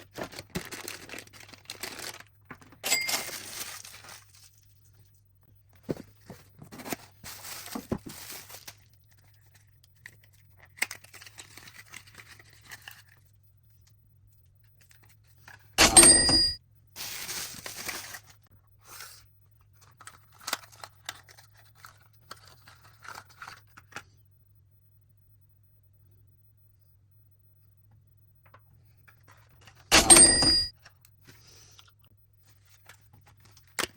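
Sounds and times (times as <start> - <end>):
packaging tearing and crinkling: 0.0 - 4.6, 6.7 - 13.2, 17.0 - 18.4, 20.0 - 23.7
loud ringing clink: 2.8 - 3.4, 15.8 - 16.6, 29.9 - 30.7.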